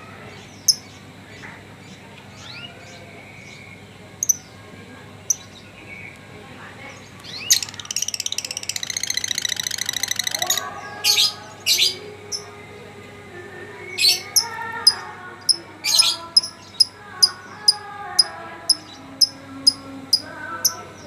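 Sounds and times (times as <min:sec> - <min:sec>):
bird chirping and trilling: 0:04.2 - 0:04.5, 0:07.2 - 0:12.5, 0:13.9 - 0:21.0.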